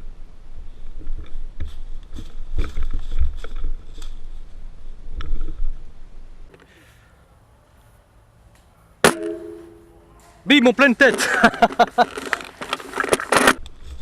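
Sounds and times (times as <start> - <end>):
rustling: 7.7 - 14.0.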